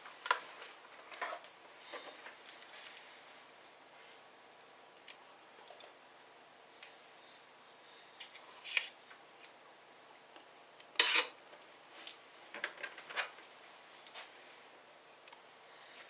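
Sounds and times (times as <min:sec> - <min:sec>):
clicks of tools and laptop plastic: 0:12.0 - 0:13.4
plastic parts clattering: 0:12.5 - 0:13.4.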